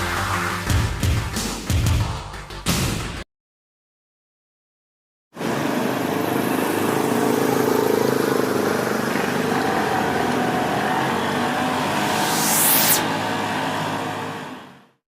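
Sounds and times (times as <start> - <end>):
rising hiss: 11.6 - 13.4.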